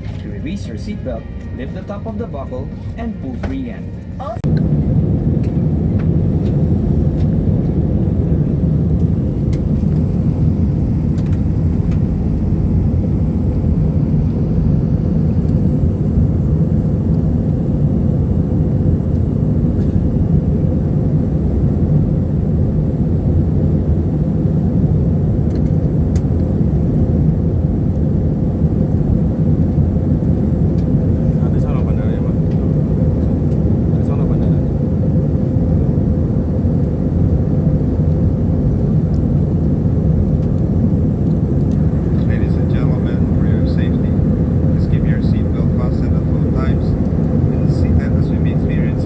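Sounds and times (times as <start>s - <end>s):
airliner cabin engine rumble: 0.0s - 49.0s.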